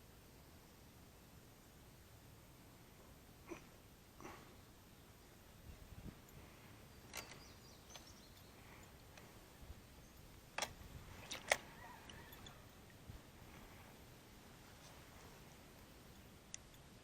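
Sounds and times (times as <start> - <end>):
faint sharp clicks: 15.7 - 16.9.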